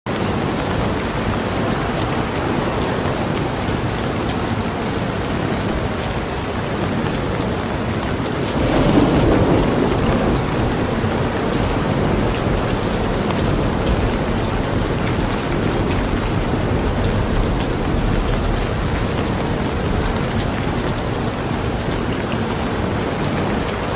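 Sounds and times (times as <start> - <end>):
heavy rain falling: 0.1 - 23.9
low thunder rumble: 7.6 - 23.9.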